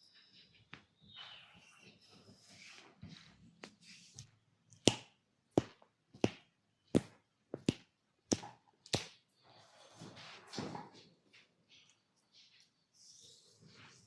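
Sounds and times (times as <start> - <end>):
hand slapping body: 7.0 - 9.2.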